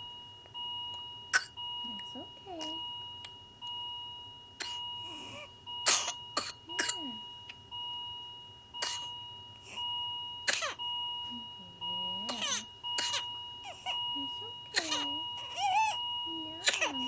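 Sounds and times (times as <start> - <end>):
child coughing: 1.3 - 1.6, 4.6 - 4.8, 5.8 - 7.2, 8.8 - 9.1, 10.5 - 10.8, 12.3 - 13.8, 14.7 - 15.9, 16.6 - 17.0.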